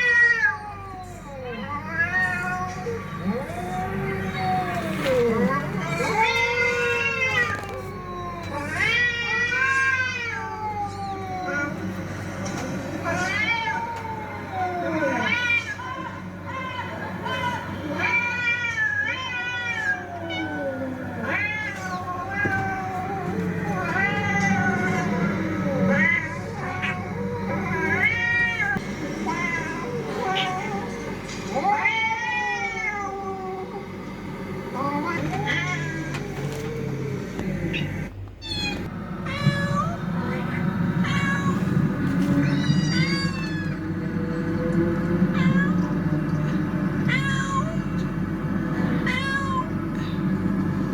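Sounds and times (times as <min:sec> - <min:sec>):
cats meowing and yowling: 0:00.0 - 0:33.9, 0:34.8 - 0:50.3
cat yowling: 0:13.1 - 0:33.8, 0:42.3 - 0:44.2.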